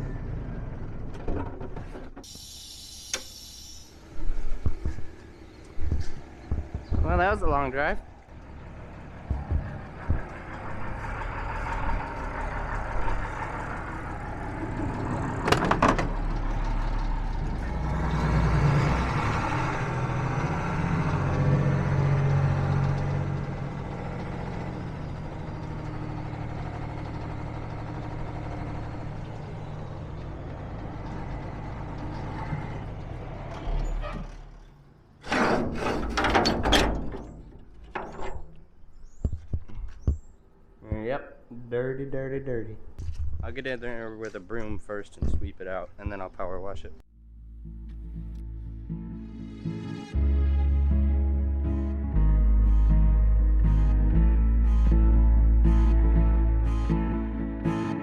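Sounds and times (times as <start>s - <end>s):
truck engine running: 0.0s - 40.3s
knocks and clanks: 1.0s - 2.3s, 4.5s - 18.0s, 20.4s - 40.3s.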